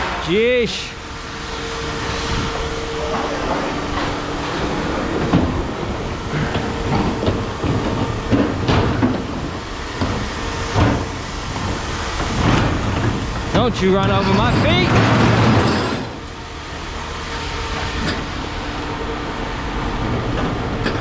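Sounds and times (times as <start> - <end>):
scrap metal clanking: 12.3 - 16.2.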